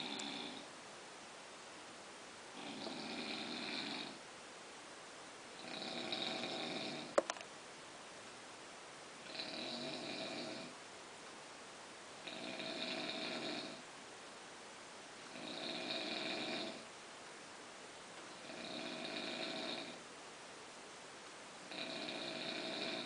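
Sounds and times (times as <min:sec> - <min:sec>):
snoring: 0:00.0 - 0:00.7, 0:02.6 - 0:04.2, 0:05.6 - 0:07.2, 0:09.2 - 0:10.8, 0:12.2 - 0:13.8, 0:15.3 - 0:16.9, 0:18.3 - 0:20.0, 0:21.7 - 0:23.0.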